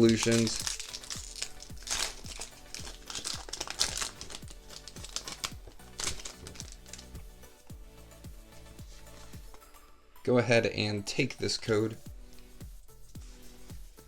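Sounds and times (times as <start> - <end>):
foil wrapper crinkling: 0.0 - 7.2
background music with beat: 0.0 - 14.0.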